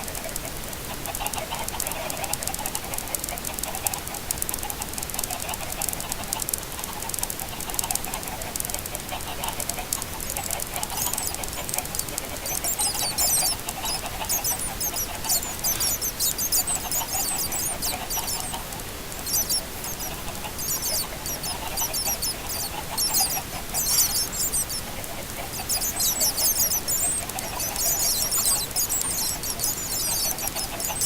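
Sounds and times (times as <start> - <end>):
chicks chirping and peeping: 7.0 - 31.0
low chicken calls: 9.3 - 31.0.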